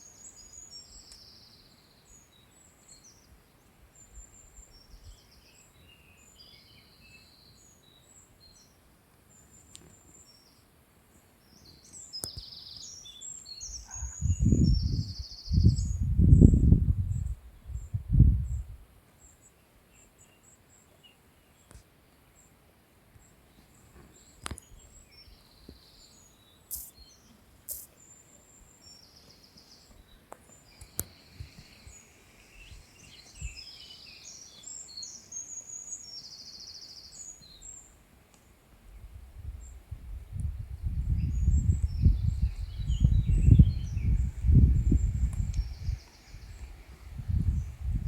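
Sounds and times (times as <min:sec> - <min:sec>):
small birds chirping: 0:00.0 - 0:39.8, 0:40.4 - 0:48.0
sharp clicks: 0:26.7 - 0:27.0, 0:27.7 - 0:27.9.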